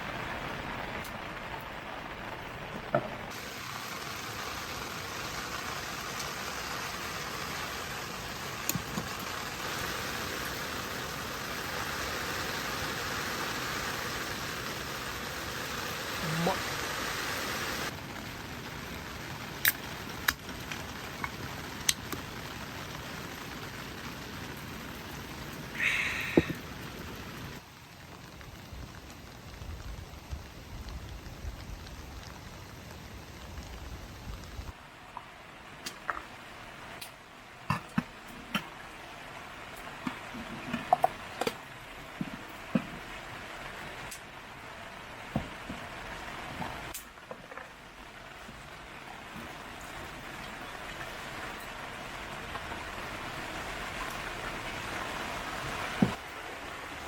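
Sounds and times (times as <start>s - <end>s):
steady rain falling: 0.0s - 57.0s
bright hiss: 3.3s - 17.9s, 25.7s - 27.6s.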